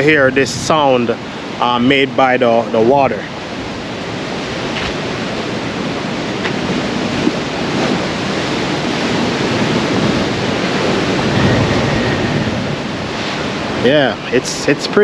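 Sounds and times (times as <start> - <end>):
surf rushing through blowhole: 0.0 - 15.0.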